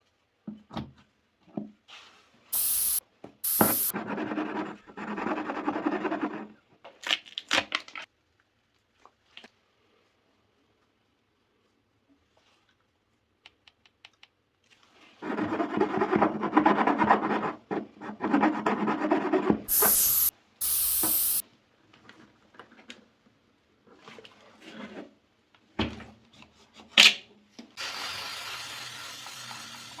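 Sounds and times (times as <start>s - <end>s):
air hissing: 2.6s - 3.9s, 19.7s - 21.4s
rasp tool rubbing in tire: 18.2s - 21.4s.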